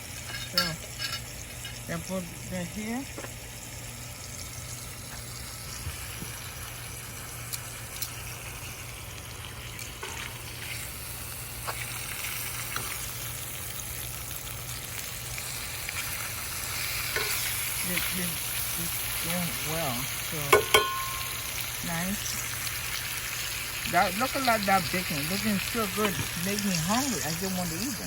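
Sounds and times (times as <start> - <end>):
food sizzling in a frying pan: 0.0 - 28.0
low hum: 16.8 - 23.3.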